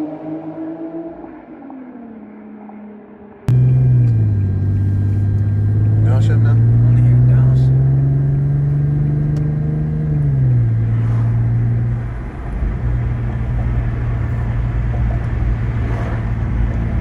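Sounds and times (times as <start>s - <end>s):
car engine running: 3.5s - 17.0s.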